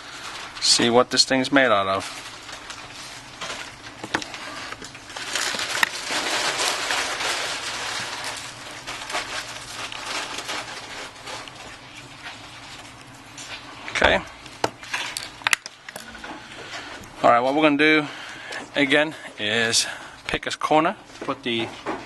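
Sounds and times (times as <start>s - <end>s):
scraping and rustling: 1.9s - 14.0s.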